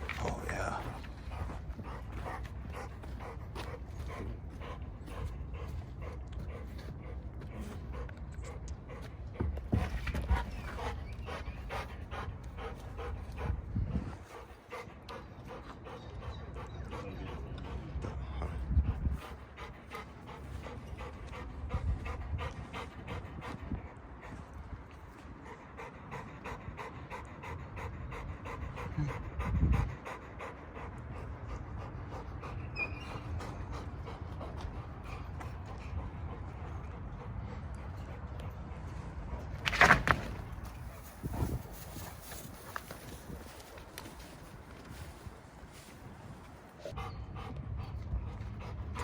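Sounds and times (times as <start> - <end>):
dog panting fast: 0.0 - 49.0.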